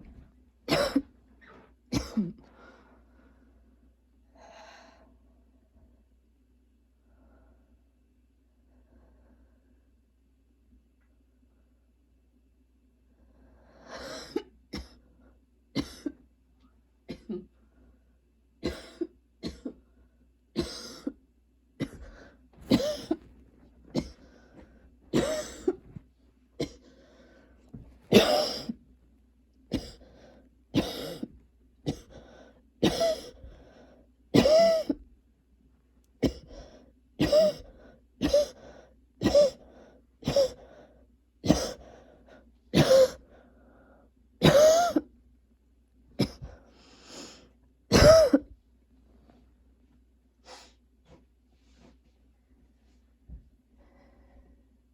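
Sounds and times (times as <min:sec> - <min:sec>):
girl coughing: 0:00.7 - 0:01.1, 0:01.9 - 0:02.4, 0:15.8 - 0:16.2, 0:17.1 - 0:17.5, 0:18.6 - 0:19.8, 0:21.8 - 0:23.3, 0:23.9 - 0:24.2, 0:25.1 - 0:26.0, 0:28.1 - 0:28.8, 0:30.8 - 0:31.3, 0:32.8 - 0:33.4, 0:34.4 - 0:35.0, 0:37.2 - 0:38.6, 0:39.2 - 0:39.6, 0:40.2 - 0:40.6, 0:41.4 - 0:41.8, 0:42.7 - 0:43.2, 0:44.4 - 0:45.1, 0:46.2 - 0:46.5, 0:47.9 - 0:48.5.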